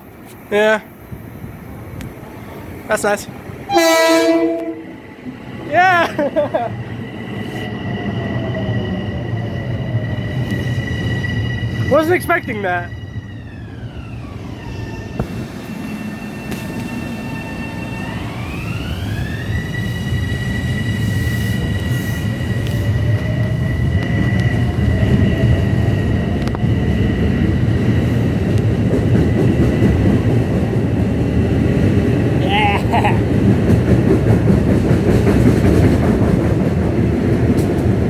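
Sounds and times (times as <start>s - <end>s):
low rumble of train: 0.0s - 38.0s
train electric drive whine: 0.9s - 38.0s.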